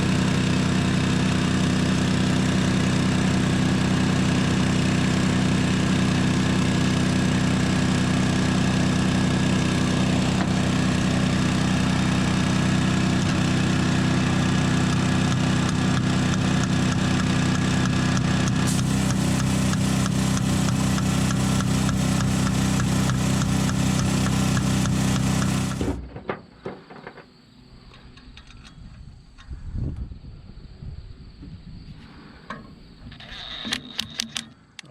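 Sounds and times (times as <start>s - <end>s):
engine idling: 0.0s - 26.0s.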